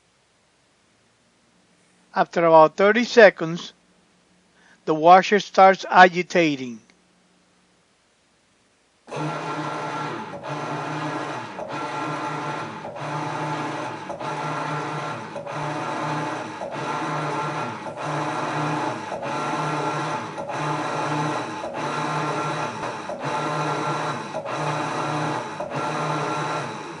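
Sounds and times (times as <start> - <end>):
washing machine motor whirring: 9.1 - 27.0.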